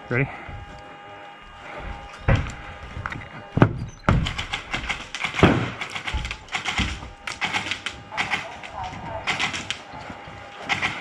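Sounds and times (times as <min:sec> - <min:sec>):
heavy thumps: 0:00.4 - 0:11.0
airsoft guns firing: 0:04.1 - 0:09.9, 0:10.6 - 0:11.0.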